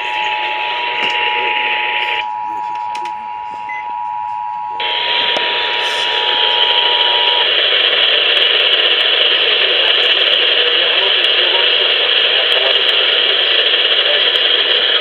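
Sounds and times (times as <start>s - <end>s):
radio static hiss: 0.0s - 3.2s, 4.8s - 15.0s
two-tone alert signal: 0.0s - 7.5s.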